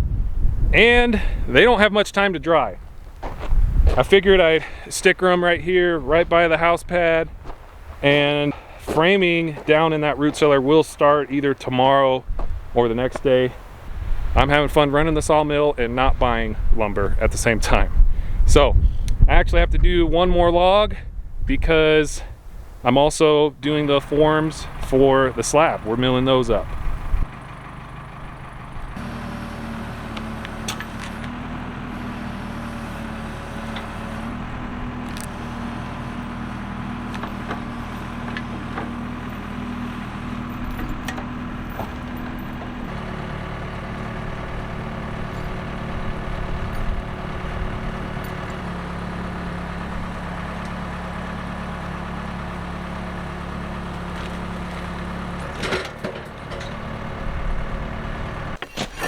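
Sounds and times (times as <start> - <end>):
sawmill engine running under load: 0.1 - 18.4, 22.8 - 59.0.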